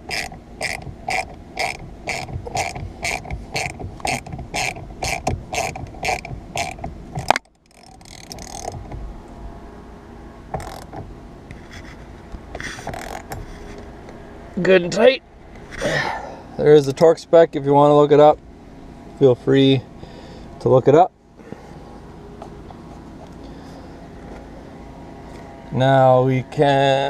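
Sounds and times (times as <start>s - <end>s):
ratchet wrench clicking: 0.0s - 9.0s, 10.6s - 11.0s.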